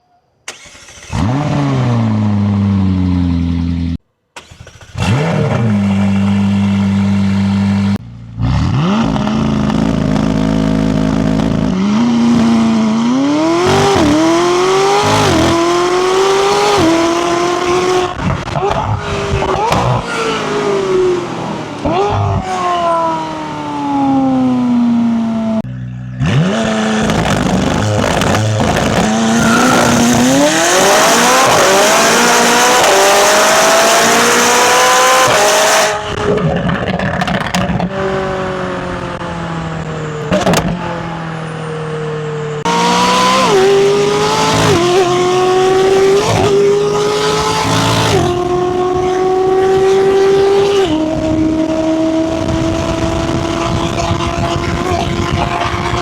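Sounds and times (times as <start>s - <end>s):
car engine accelerating hard: 0.5s - 41.4s, 42.2s - 56.0s
engine upshifts: 0.5s - 56.0s.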